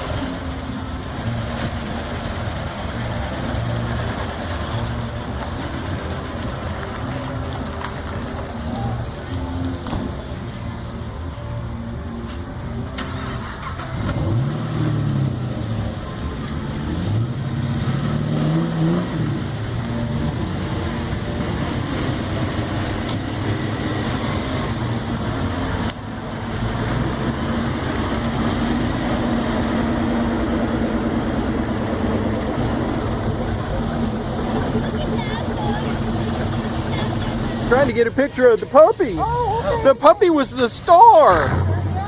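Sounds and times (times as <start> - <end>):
car engines running: 0.0 - 42.0
engine revving: 12.8 - 38.5, 41.1 - 42.0.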